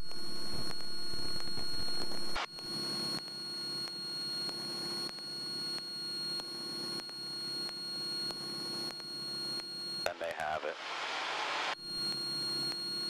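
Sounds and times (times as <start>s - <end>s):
high electrical whine: 0.0s - 13.0s.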